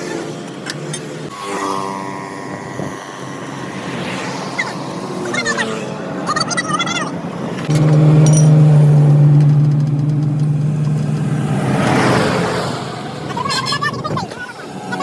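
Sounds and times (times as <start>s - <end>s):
vehicle engine running: 7.7s - 14.3s.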